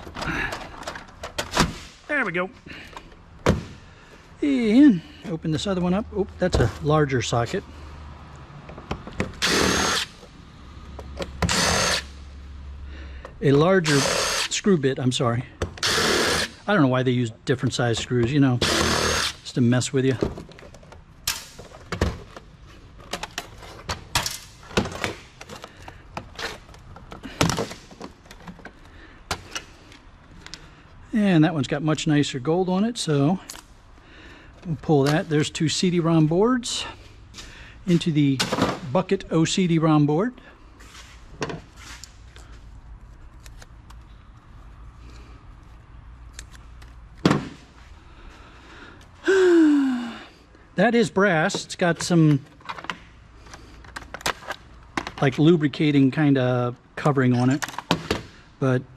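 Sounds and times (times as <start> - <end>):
clicks and knocks of parts: 0.0 - 1.9, 20.1 - 30.6, 51.5 - 55.4, 57.4 - 58.4.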